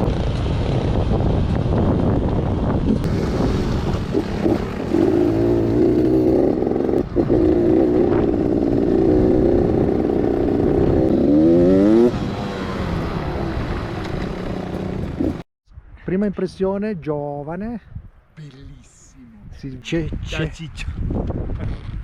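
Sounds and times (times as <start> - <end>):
wind noise: 0.0 - 22.0
motorcycle engine under load: 3.0 - 15.4.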